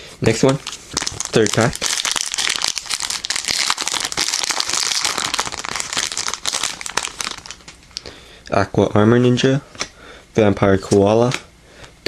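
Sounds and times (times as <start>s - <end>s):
foil wrapper crinkling: 0.3s - 8.0s.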